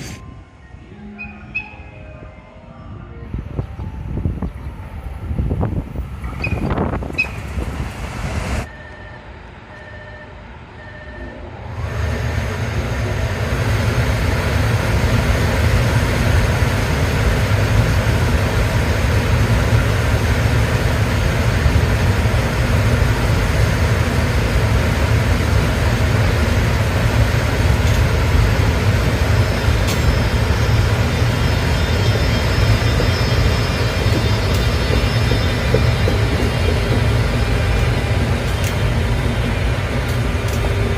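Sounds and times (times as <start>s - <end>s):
electric locomotive rumble: 0.0s - 40.9s
faint high whining tones: 29.3s - 40.9s.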